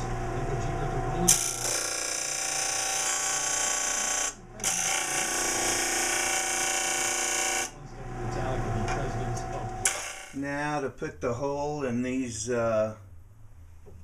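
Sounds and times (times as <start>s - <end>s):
power tool motor whining: 1.3s - 7.7s, 9.8s - 10.4s.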